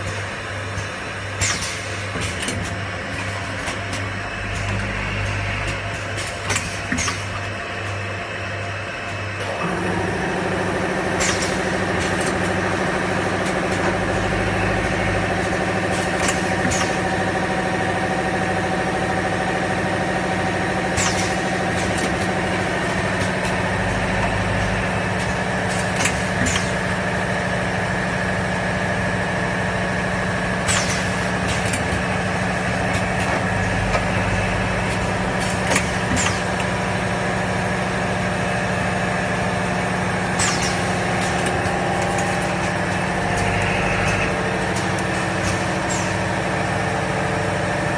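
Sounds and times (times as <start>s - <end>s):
machine motor hum: 0.0s - 47.9s.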